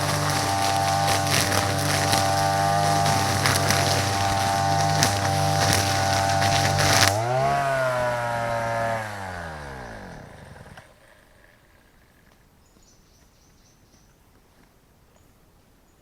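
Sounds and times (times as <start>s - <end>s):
brush cutter engine spinning down: 0.0s - 11.5s.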